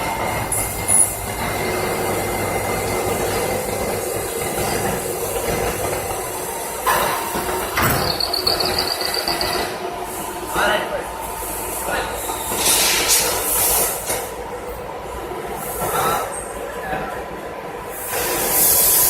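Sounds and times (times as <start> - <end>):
machine running noise: 0.0 - 10.6.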